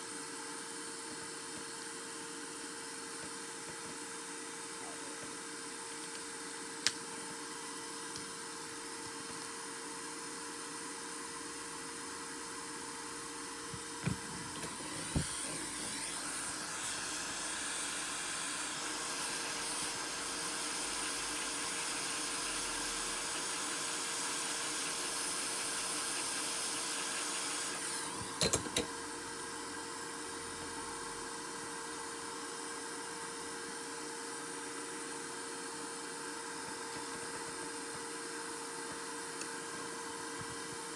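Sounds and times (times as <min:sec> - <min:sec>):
small electric tool whirring: 0:13.3 - 0:29.8.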